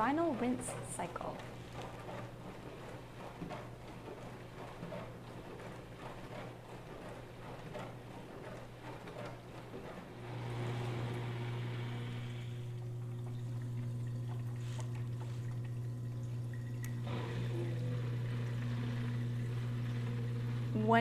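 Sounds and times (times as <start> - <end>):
dishwasher pump humming: 0.0 - 21.0
water pouring and splashing: 12.6 - 20.7.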